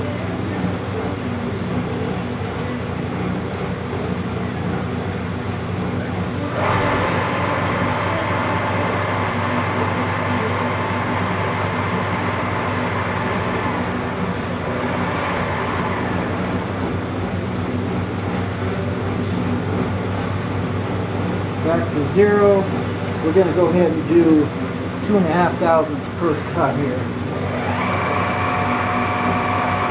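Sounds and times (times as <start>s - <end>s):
metal lathe motor hum: 0.0s - 29.9s
lathe tool cutting cast iron: 6.3s - 18.6s, 20.3s - 29.9s.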